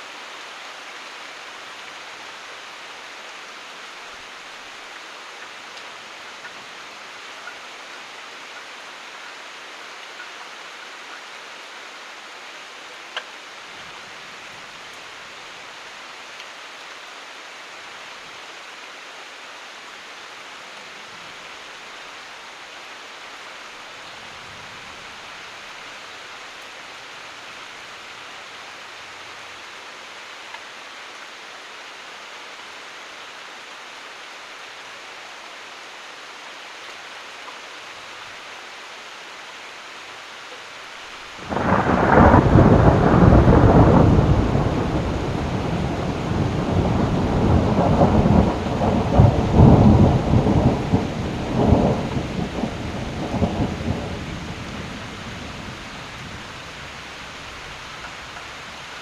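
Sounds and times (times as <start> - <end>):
steady rain hissing: 0.0 - 59.0
loud thunder clap rumbling: 41.5 - 54.9.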